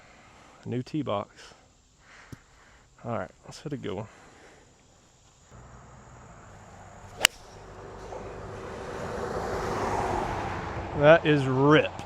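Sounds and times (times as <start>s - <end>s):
golf club striking ball: 7.1s - 7.7s.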